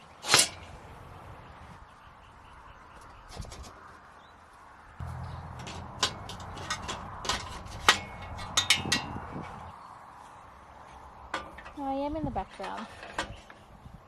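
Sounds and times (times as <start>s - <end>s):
sharp clicks and knocks: 5.1s - 9.5s.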